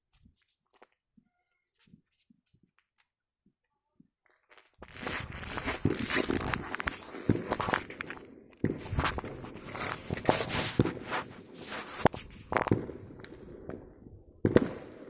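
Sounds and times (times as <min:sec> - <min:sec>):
rustling: 0:04.5 - 0:08.2, 0:08.8 - 0:13.0
crunching footsteps: 0:04.5 - 0:13.4.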